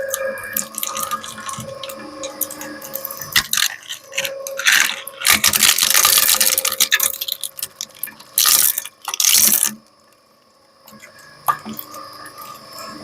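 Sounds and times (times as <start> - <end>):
shredder crunching plastic and metal: 0.5 - 9.8.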